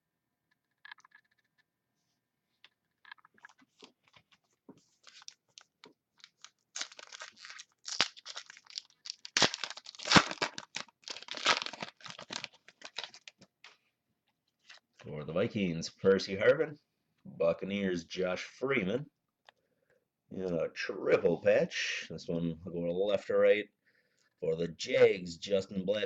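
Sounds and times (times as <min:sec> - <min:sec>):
wrapper tearing and crinkling: 0:05.0 - 0:13.4.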